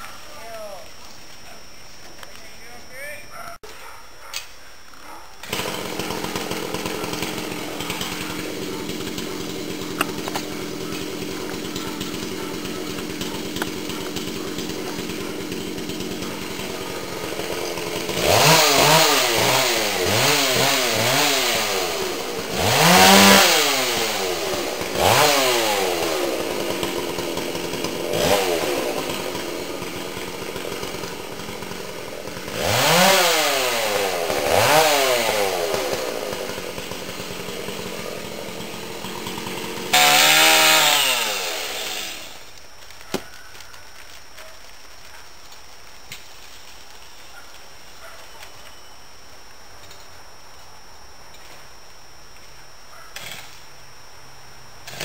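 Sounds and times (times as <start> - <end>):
chainsaw idling and revving: 5.4 - 43.1, 53.2 - 53.6, 54.8 - 55.0.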